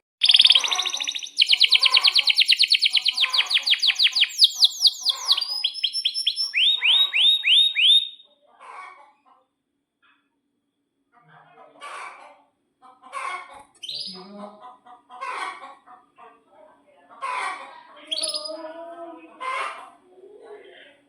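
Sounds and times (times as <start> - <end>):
canary singing trills: 0.2 - 8.3, 13.8 - 14.4.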